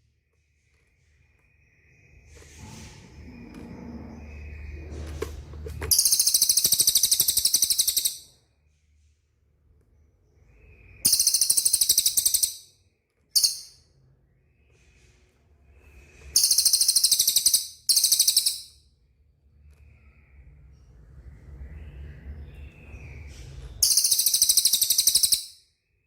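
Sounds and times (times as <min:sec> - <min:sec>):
songbird high rattling trills: 0:05.9 - 0:08.3, 0:10.8 - 0:12.6, 0:13.4 - 0:13.8, 0:16.3 - 0:18.7, 0:23.8 - 0:25.5.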